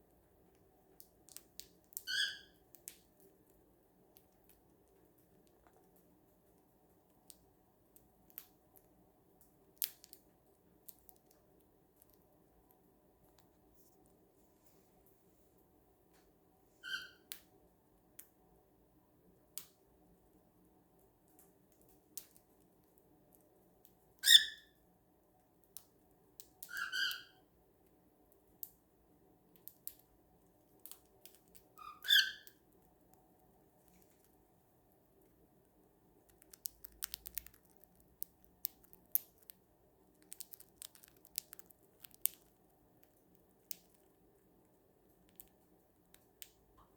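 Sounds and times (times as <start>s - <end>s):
cockatiel chirping calls: 2.0s - 2.5s, 16.8s - 17.2s, 24.2s - 24.7s, 26.6s - 27.4s, 31.8s - 32.6s
bird beak cracking treats: 36.3s - 39.6s, 40.2s - 44.1s.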